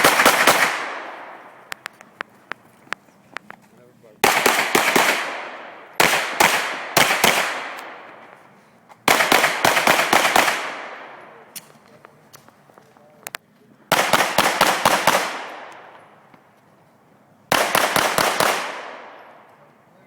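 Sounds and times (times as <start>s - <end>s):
pistol shots echoing: 0.0s - 1.7s, 4.2s - 8.2s, 9.0s - 11.5s, 13.9s - 16.0s, 17.5s - 19.5s.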